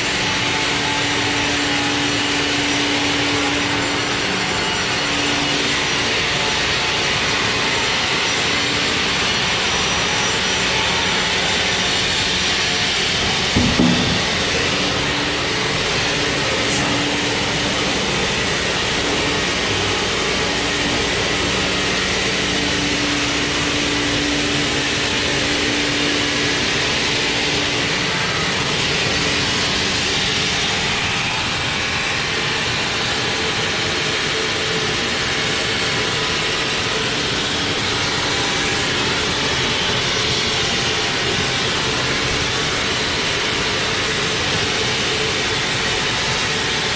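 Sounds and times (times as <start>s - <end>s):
sawmill machinery running: 0.0s - 46.9s
sharp knocks: 13.2s - 15.0s.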